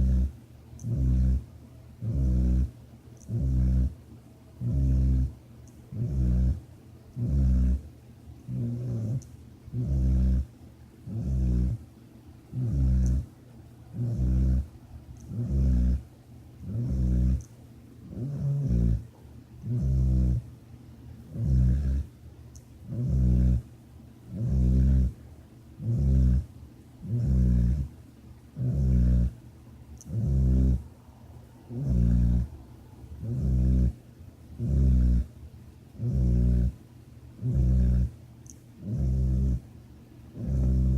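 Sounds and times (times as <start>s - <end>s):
person snoring: 4.6s - 5.3s, 7.2s - 7.8s, 12.5s - 13.2s, 30.1s - 30.8s, 31.7s - 32.6s, 33.2s - 34.0s, 38.8s - 39.6s, 40.4s - 40.9s.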